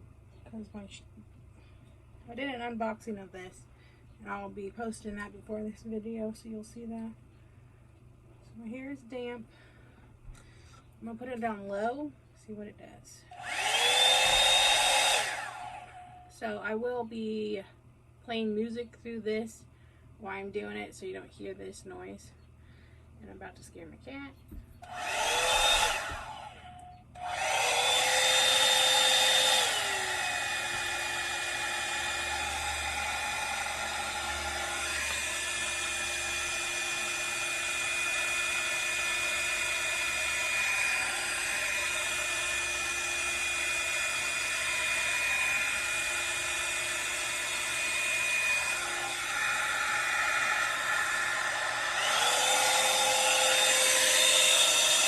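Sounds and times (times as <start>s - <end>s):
hair dryer motor whine: 13.3s - 16.3s, 24.8s - 55.0s.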